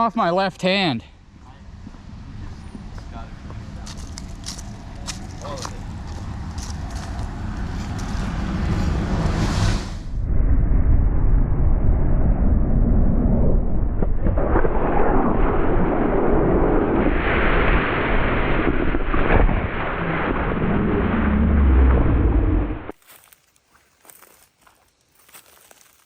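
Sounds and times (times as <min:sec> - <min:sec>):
wind buffeting microphone: 0:01.7 - 0:16.9.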